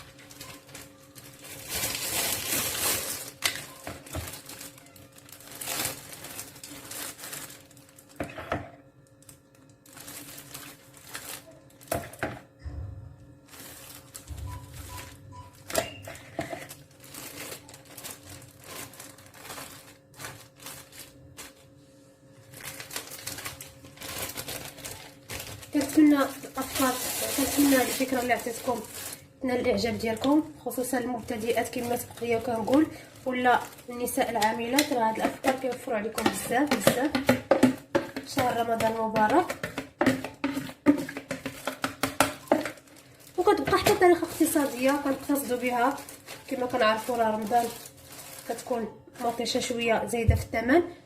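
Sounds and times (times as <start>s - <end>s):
plastic bags crinkling: 0.0s - 12.5s, 13.4s - 50.7s
steady low hum: 6.6s - 41.8s.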